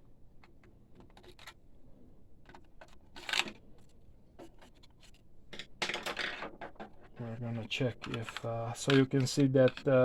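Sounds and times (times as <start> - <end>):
clicks and taps of tools: 8.0 - 10.0.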